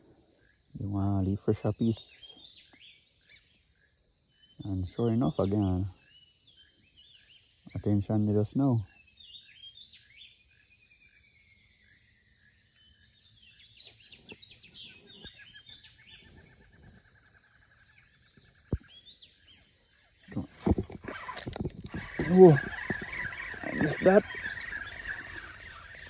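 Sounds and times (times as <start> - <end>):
birds chirping and calling: 13.8 - 26.0
bird trills: 18.8 - 26.0.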